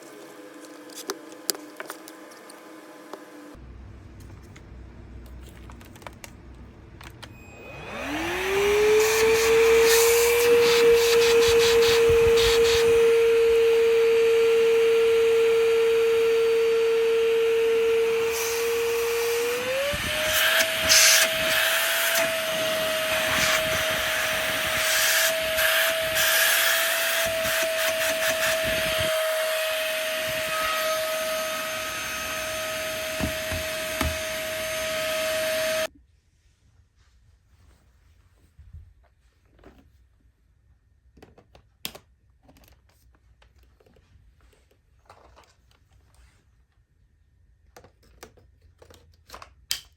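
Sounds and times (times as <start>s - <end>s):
vacuum cleaner motor whining: 7.2s - 35.9s.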